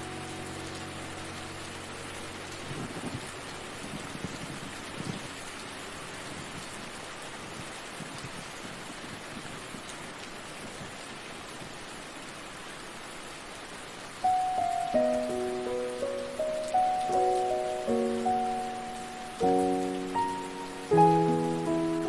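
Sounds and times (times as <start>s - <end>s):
music with sustained notes: 0.0s - 6.3s, 14.2s - 22.0s
steady rain falling: 0.0s - 22.0s.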